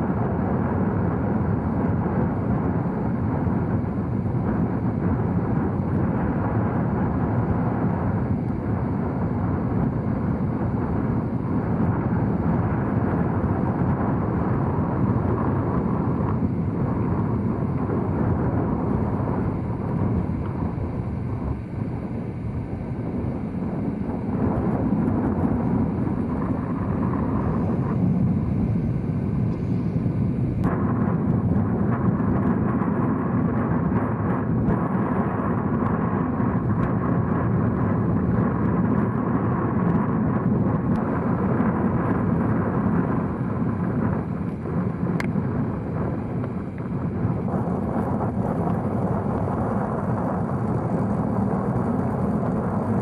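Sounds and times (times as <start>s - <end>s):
wind buffeting microphone: 0.0s - 53.0s.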